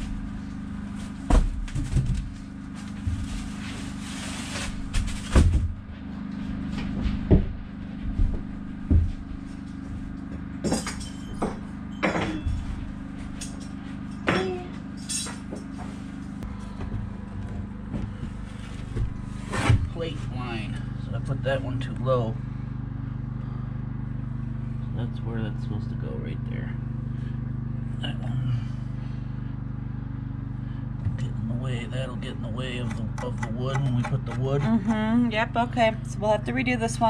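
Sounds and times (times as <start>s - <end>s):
steady low hum: 0.0s - 37.0s.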